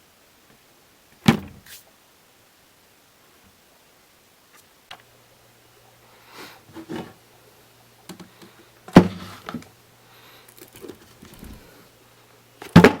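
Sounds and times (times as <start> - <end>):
low steady hum: 0.0 - 13.0
objects knocking and thunking: 6.7 - 7.2, 8.0 - 9.7, 12.6 - 13.0.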